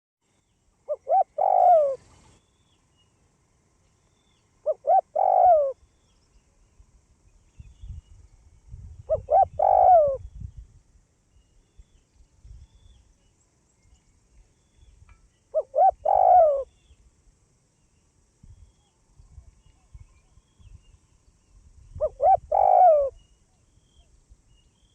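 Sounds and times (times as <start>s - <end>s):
dove cooing: 0.9s - 2.2s, 4.6s - 5.8s, 9.1s - 10.2s, 15.6s - 16.7s, 22.0s - 23.2s.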